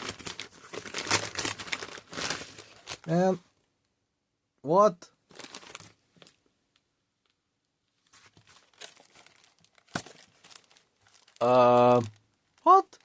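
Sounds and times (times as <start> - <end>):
packaging crinkling and tearing: 0.0 - 3.2, 5.3 - 6.4, 8.2 - 13.0.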